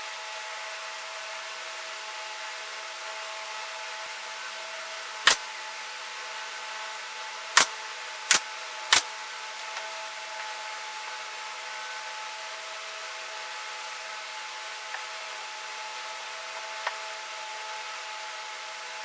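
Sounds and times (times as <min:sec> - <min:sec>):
steady hiss: 0:08.3 - 0:09.0.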